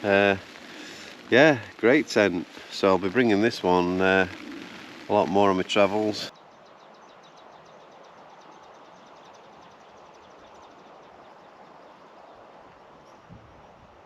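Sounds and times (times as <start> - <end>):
rain and wind on a tent: 0.0 - 6.4.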